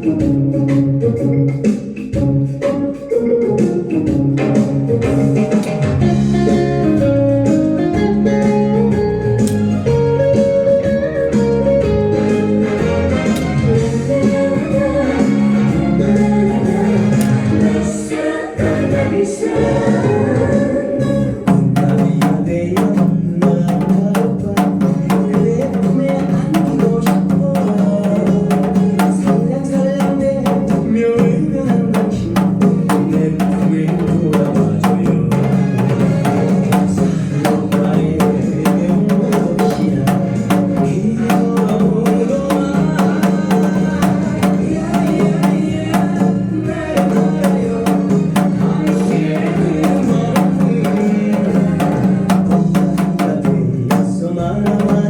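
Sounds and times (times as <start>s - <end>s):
backing song with singer: 6.0s - 55.0s
hourglass drum strokes: 21.4s - 55.0s.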